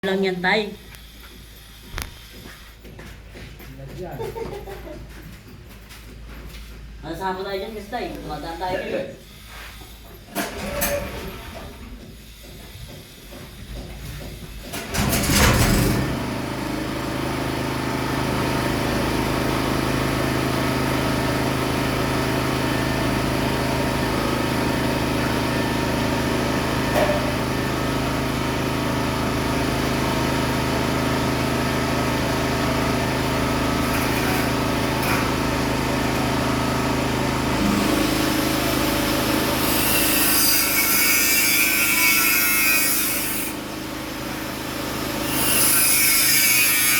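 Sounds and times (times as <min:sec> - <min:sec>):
power tool running: 0:08.3 - 0:46.9
hissing rasp of cutting: 0:45.2 - 0:46.9.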